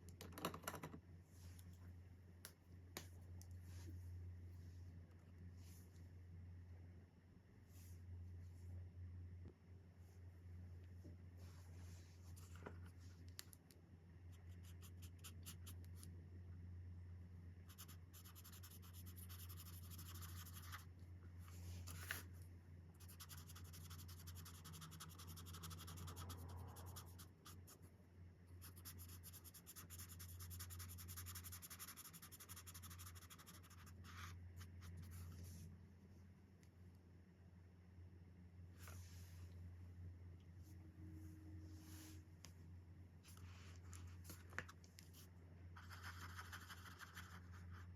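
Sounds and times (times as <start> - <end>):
steady low hum: 0.0 - 47.9
marker scratching on paper: 17.7 - 20.9, 23.0 - 27.8, 28.6 - 35.4, 45.8 - 47.9.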